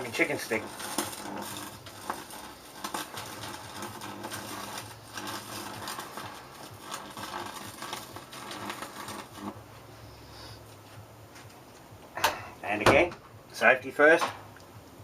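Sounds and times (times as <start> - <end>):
transformer humming: 0.0 - 10.2
electric arc crackling and buzzing: 0.0 - 15.0.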